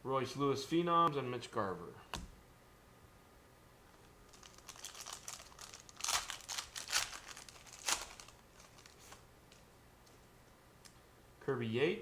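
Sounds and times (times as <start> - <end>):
wrapper crinkling: 4.0 - 9.7.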